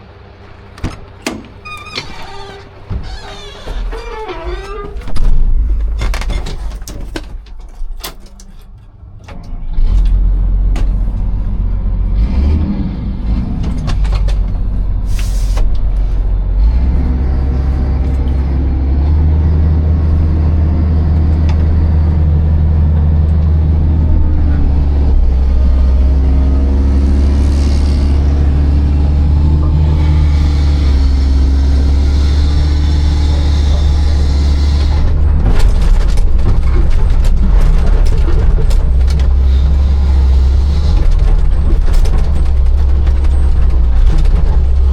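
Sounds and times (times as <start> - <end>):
excavator diesel engine running: 0.0 - 44.9
clicks and knocks: 0.5 - 11.4.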